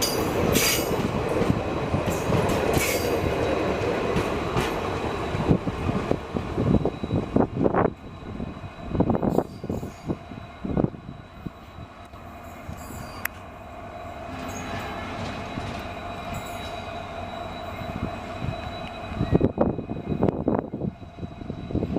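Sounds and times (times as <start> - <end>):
thin squeal from train wheels: 0.0 - 1.1, 2.1 - 3.8, 4.4 - 21.9
train coaches rolling: 0.0 - 21.9.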